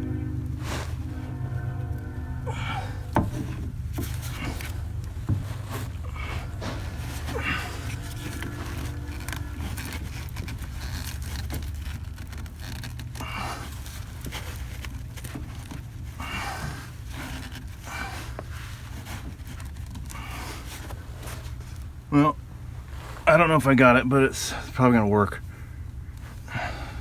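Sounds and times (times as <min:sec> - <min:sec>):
person breathing heavily: 0:00.0 - 0:11.0, 0:26.4 - 0:27.0
steady low hum: 0:00.0 - 0:27.0.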